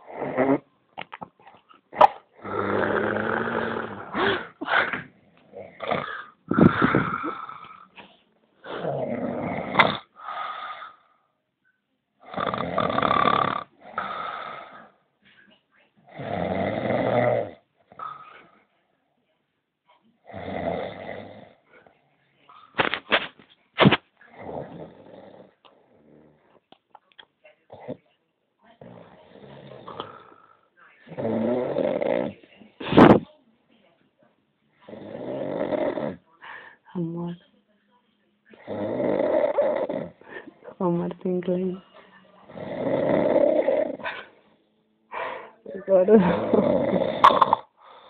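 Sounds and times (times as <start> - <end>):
quiet breaths: 1.2 - 22.8, 23.5 - 48.0
man snoring: 2.4 - 4.6, 5.6 - 7.8, 8.8 - 10.1, 12.2 - 14.9, 16.1 - 18.2, 20.3 - 21.6, 24.4 - 26.3, 31.1 - 32.3, 34.9 - 36.2, 38.6 - 40.2, 42.5 - 44.0, 46.2 - 47.6.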